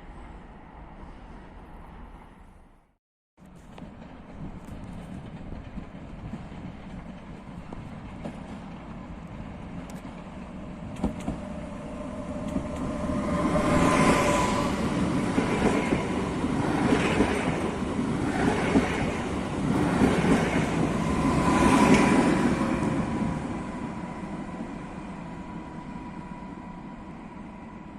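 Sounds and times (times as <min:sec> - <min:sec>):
train rumbling and clattering: 0:03.4 - 0:27.9.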